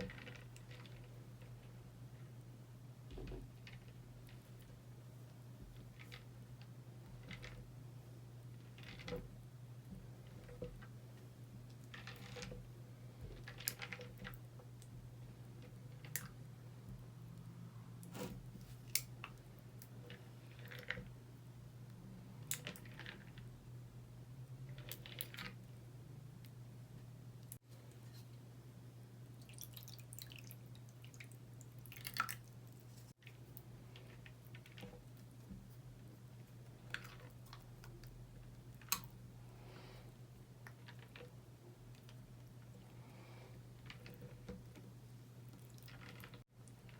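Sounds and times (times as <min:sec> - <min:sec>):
faint steady hum: 0:00.0 - 0:46.9.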